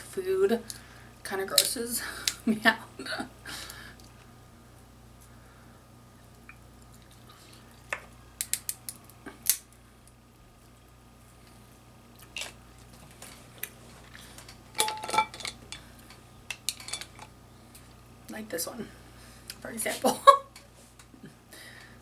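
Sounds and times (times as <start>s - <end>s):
shells and dishware clacking: 14.5s - 15.8s, 16.5s - 17.3s.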